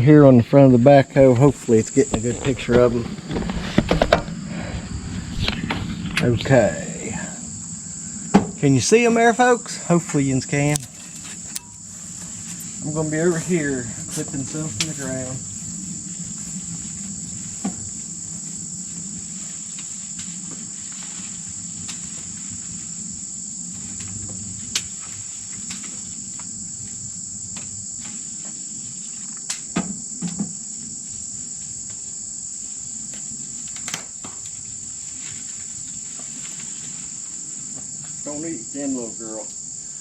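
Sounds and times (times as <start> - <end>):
crickets chirping: 0.0 - 40.0
low steady hum: 1.0 - 20.0.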